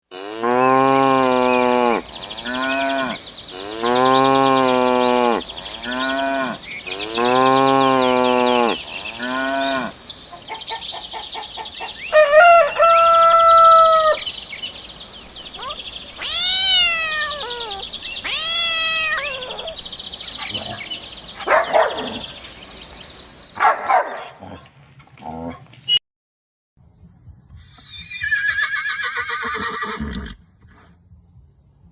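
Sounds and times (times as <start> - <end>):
cow mooing: 0.1 - 10.0
animal calls: 0.1 - 14.4, 15.0 - 24.7
birds chirping: 0.3 - 25.0
rooster crowing: 12.0 - 14.3, 15.5 - 19.9.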